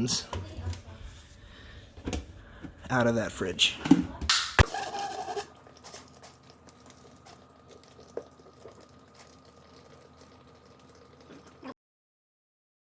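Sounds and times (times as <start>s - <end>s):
faint hum: 4.6s - 11.7s
water running from dispenser: 4.6s - 11.8s.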